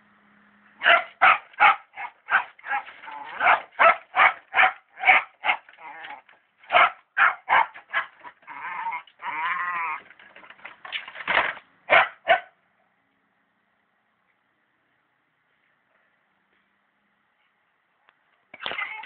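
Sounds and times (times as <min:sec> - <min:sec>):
dog barking: 0:00.8 - 0:05.7, 0:06.7 - 0:08.2, 0:11.9 - 0:12.6
dog howling: 0:08.4 - 0:10.0.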